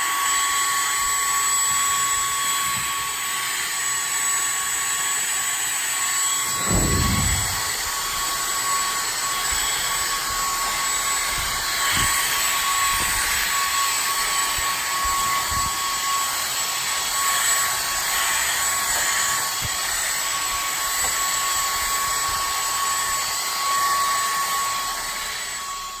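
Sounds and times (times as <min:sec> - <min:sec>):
vacuum cleaner whining: 0:00.1 - 0:26.0.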